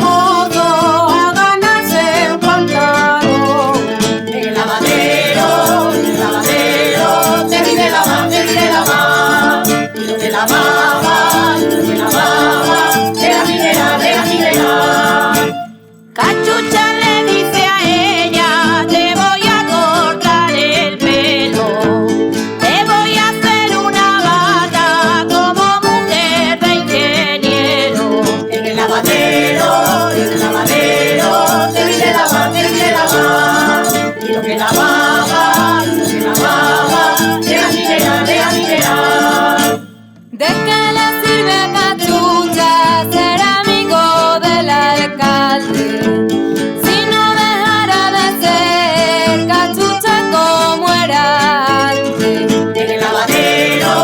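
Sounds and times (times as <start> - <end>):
person singing folk song: 0.0 - 54.0
strummed guitar: 2.2 - 18.0, 28.3 - 40.7.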